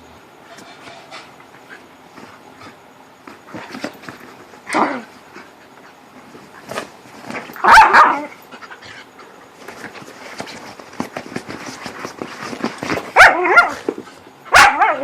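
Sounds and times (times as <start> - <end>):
dogs scuffling: 0.5 - 14.7
dogs barking: 7.6 - 8.3, 13.1 - 13.9, 14.5 - 15.0
dogs yipping: 7.6 - 8.4, 13.1 - 13.9, 14.5 - 15.0.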